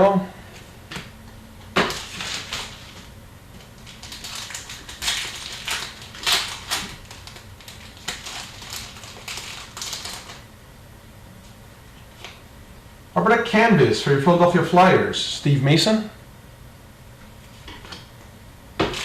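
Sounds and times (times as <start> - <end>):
trading cards rustling: 1.8 - 10.4.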